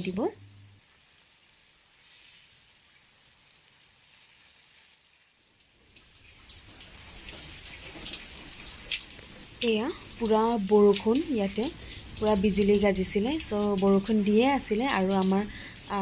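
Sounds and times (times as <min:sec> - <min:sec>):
raindrops striking: 0:00.0 - 0:16.0
heavy rain hissing: 0:06.8 - 0:16.0.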